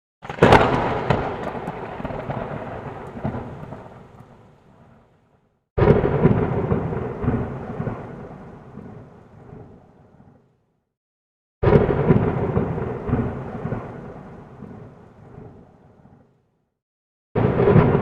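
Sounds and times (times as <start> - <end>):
rain: 0.2 - 5.1, 6.0 - 10.2, 11.7 - 16.3
thunderclaps: 0.2 - 5.1, 5.8 - 10.4, 11.6 - 16.3, 17.4 - 18.0.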